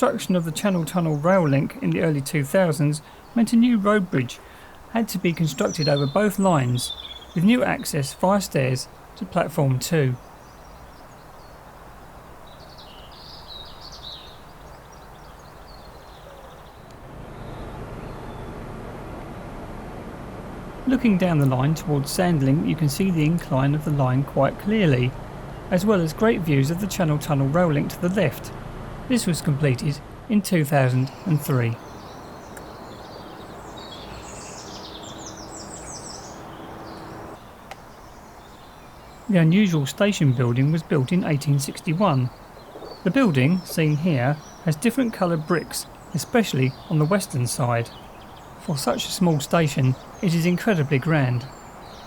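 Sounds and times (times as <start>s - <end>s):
birds chirping: 0.0s - 52.0s
faint steady hum: 0.0s - 52.0s
outdoor background noise: 0.0s - 52.0s
steady low rumble: 16.9s - 37.4s.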